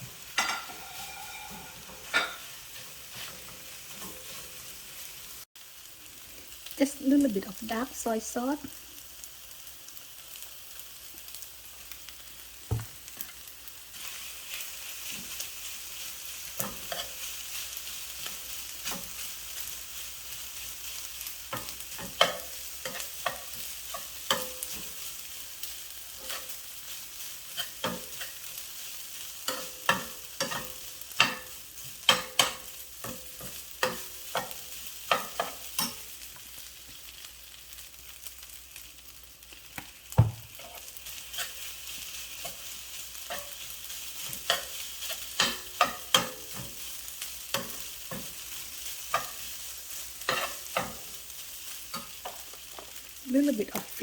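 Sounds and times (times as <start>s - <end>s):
fried rice sizzling in a pan: 0.0s - 54.0s
spatula stirring and scraping: 0.3s - 5.2s, 13.2s - 36.2s, 40.5s - 53.2s
spatula clacking against pan: 21.5s - 24.9s, 29.5s - 36.0s, 44.3s - 46.8s.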